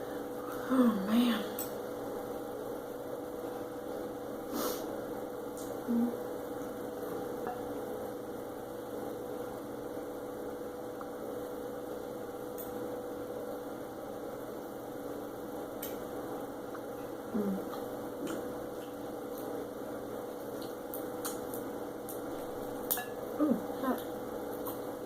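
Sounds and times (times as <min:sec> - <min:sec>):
steady background hum: 0:00.0 - 0:25.0.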